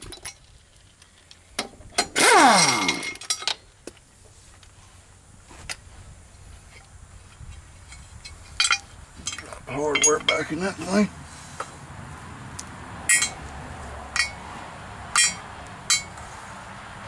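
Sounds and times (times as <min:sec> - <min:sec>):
power tool motor winding down: 0:02.1 - 0:03.2
metallic clinks of tools: 0:07.9 - 0:10.7, 0:13.1 - 0:13.4, 0:15.2 - 0:16.2.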